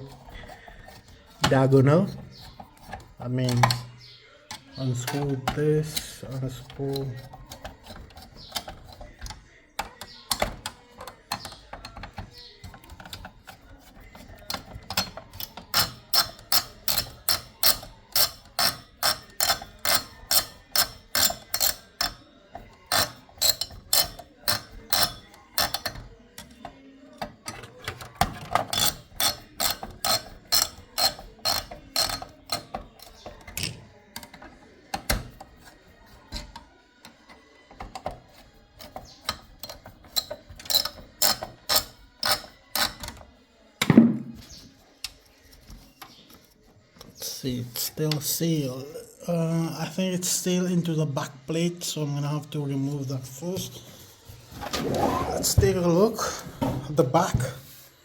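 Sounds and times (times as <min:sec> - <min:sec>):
ratcheting screwdriver clicking: 0:07.2 - 0:22.2, 0:27.5 - 0:35.7, 0:37.9 - 0:43.2.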